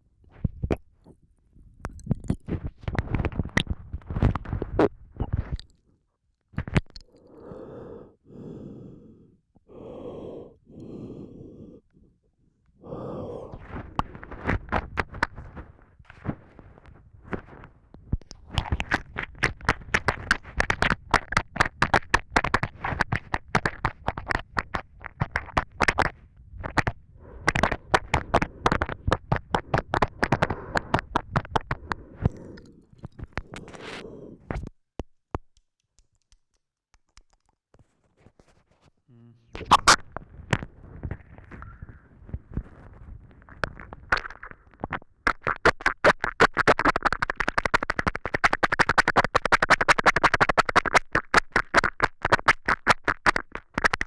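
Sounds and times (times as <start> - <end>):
saliva clicks and lip smacks: 1.8 - 5.8, 6.6 - 7.4, 18.2 - 34.7, 39.6 - 40.7, 43.5 - 54.0
person breathing: 7.0 - 14.8, 27.1 - 34.6, 41.4 - 43.1.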